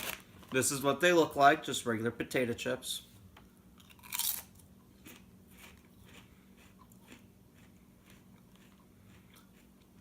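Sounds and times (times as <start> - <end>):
biting into crisp chip: 3.8 - 8.7
chewing crunches: 3.8 - 10.0.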